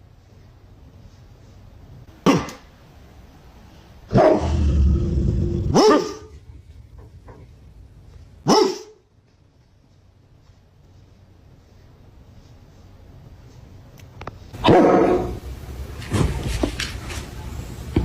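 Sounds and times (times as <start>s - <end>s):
dog barking: 4.1s - 4.6s, 5.7s - 6.4s, 8.4s - 9.0s, 14.6s - 15.4s
dog growling: 4.4s - 7.6s.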